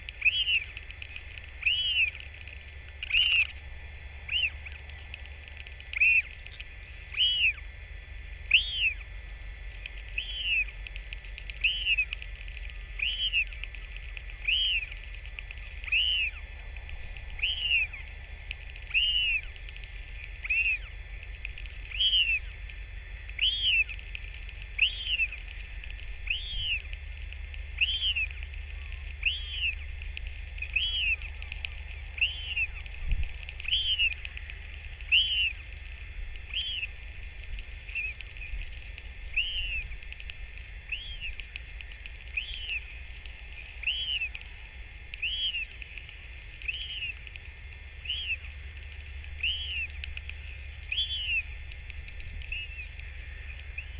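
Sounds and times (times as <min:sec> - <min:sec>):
steady low rumble: 0:00.0 - 0:53.9
bird whistled call: 0:00.2 - 0:00.7, 0:01.6 - 0:02.2, 0:03.0 - 0:03.5, 0:04.3 - 0:04.6, 0:05.9 - 0:06.3, 0:07.1 - 0:07.6, 0:08.5 - 0:09.0, 0:10.1 - 0:10.7, 0:11.6 - 0:12.2, 0:12.9 - 0:13.6, 0:14.4 - 0:14.9, 0:15.8 - 0:16.4, 0:17.4 - 0:18.0, 0:18.9 - 0:19.5, 0:20.4 - 0:20.9, 0:21.9 - 0:22.5, 0:23.4 - 0:24.0, 0:24.8 - 0:25.4, 0:26.2 - 0:26.9, 0:27.7 - 0:29.9, 0:30.6 - 0:31.4, 0:32.2 - 0:32.9, 0:33.6 - 0:34.3, 0:35.0 - 0:35.6, 0:36.5 - 0:36.9, 0:37.9 - 0:38.2, 0:39.3 - 0:39.9, 0:40.9 - 0:41.4, 0:42.3 - 0:42.9, 0:43.8 - 0:44.4, 0:45.2 - 0:45.7, 0:46.6 - 0:47.2, 0:48.0 - 0:48.5, 0:49.4 - 0:50.0, 0:50.8 - 0:51.5, 0:52.4 - 0:53.9.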